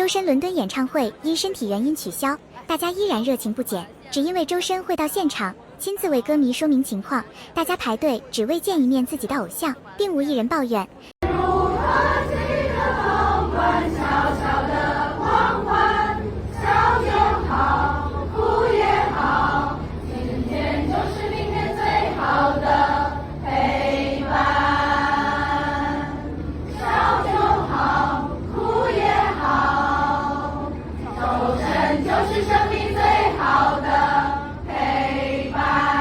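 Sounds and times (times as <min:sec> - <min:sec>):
choir singing: 0:11.2 - 0:36.0.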